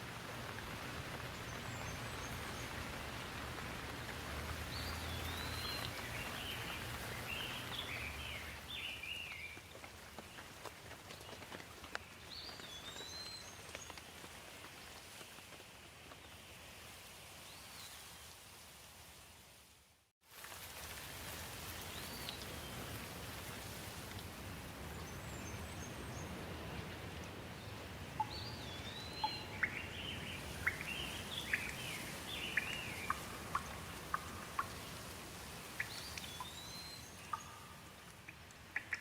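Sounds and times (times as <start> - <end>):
steady rain falling: 0.0 - 39.0
bird chirping: 28.2 - 34.7, 35.8 - 38.0.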